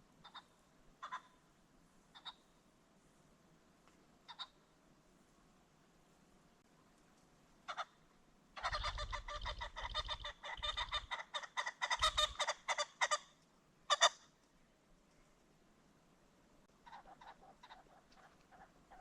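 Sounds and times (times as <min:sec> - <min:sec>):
pheasant cackling call: 0:00.2 - 0:01.4, 0:02.1 - 0:02.5, 0:04.3 - 0:04.6, 0:07.6 - 0:08.0, 0:08.6 - 0:14.3, 0:16.8 - 0:19.0.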